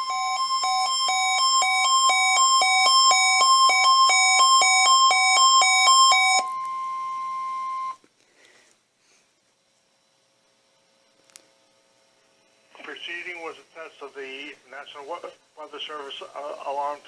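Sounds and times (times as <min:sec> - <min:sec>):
alarm beeping in alternating pitches: 0:00.0 - 0:08.0
steady alarm tone: 0:00.0 - 0:08.0.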